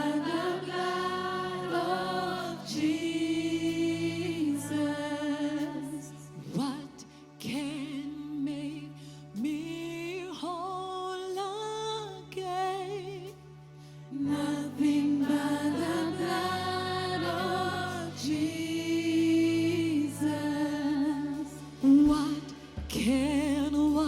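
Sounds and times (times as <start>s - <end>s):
singing with vibrato: 0.0s - 13.3s.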